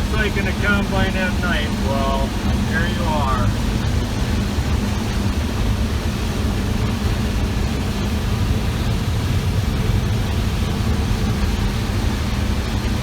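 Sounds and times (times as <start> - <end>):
combine harvester droning: 0.0 - 4.7.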